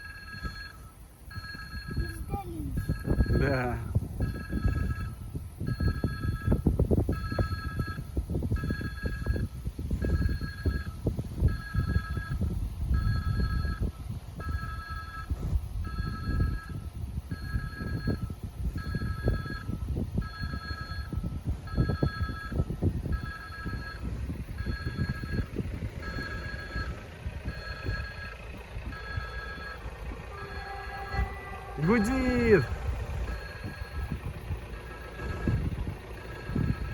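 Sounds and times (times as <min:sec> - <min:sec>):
level crossing warning beeps: 0:00.0 - 0:36.9
wind buffeting microphone: 0:00.0 - 0:36.9.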